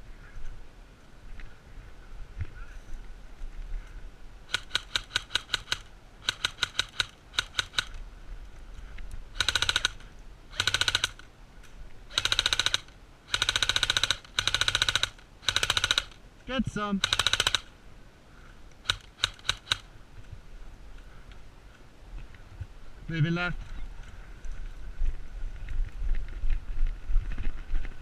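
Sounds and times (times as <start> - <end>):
airsoft rifle full-auto bursts: 4.5 - 8.0, 9.4 - 11.2, 12.1 - 16.2, 17.0 - 17.7, 18.8 - 19.9.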